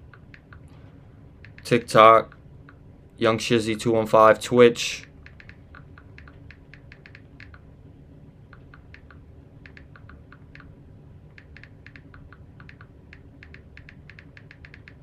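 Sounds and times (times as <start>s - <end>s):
low steady hum: 0.0s - 15.0s
computer keyboard typing: 1.4s - 1.8s, 5.2s - 7.6s, 8.6s - 10.7s, 11.4s - 15.0s.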